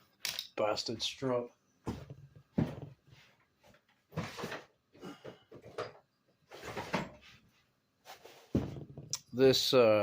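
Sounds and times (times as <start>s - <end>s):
objects handled rustling and scraping: 1.9s - 4.8s, 5.5s - 9.2s.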